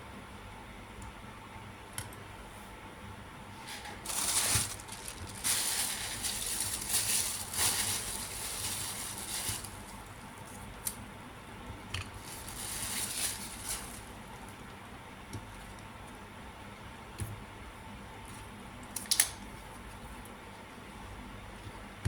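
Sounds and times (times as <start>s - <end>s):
scraping and rustling: 3.6s - 10.7s, 12.1s - 14.5s.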